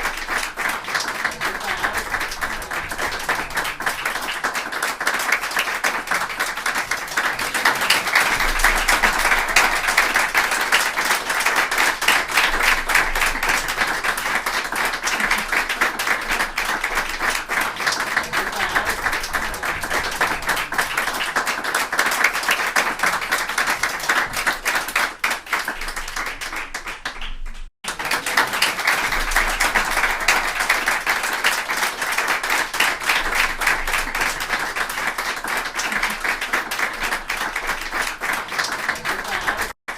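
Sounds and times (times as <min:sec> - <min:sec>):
crowd applauding: 0:00.0 - 0:39.9.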